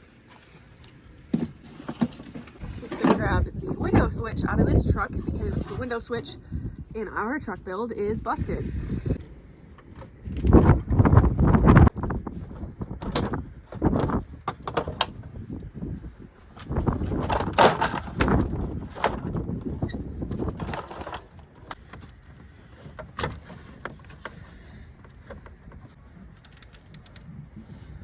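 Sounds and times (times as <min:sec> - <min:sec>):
wind rumble on microphone: 0:02.4 - 0:28.0
clips snapping and scraping: 0:16.6 - 0:28.0.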